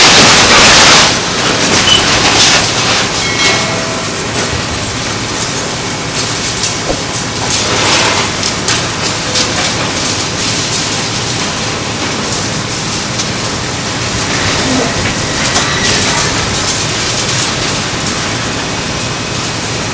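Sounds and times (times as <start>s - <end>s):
bulldozer rumbling and clattering: 0.0s - 19.9s
knocks: 6.8s - 7.3s.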